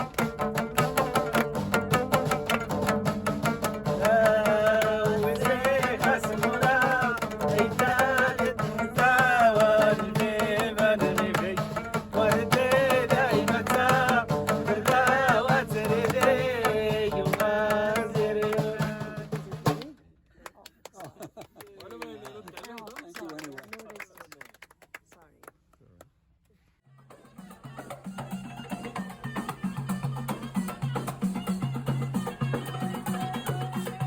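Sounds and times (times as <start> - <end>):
fast hand-drum percussion: 0.0 - 20.0, 26.9 - 34.0.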